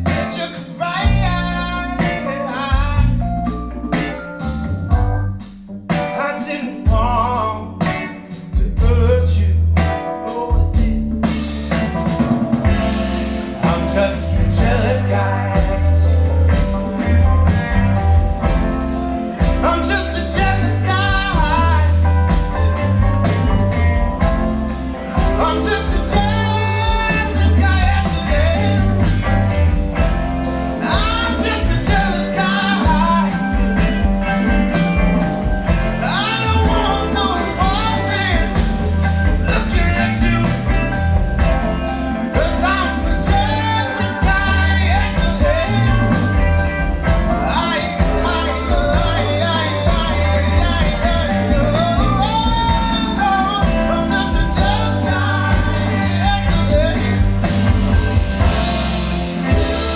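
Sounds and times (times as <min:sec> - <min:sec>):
heavy bass: 0:00.0 - 0:06.0, 0:06.8 - 0:59.9
soul ballad over speakers: 0:00.0 - 0:59.9
person singing: 0:13.4 - 0:18.6, 0:19.4 - 0:30.1, 0:30.8 - 0:59.9.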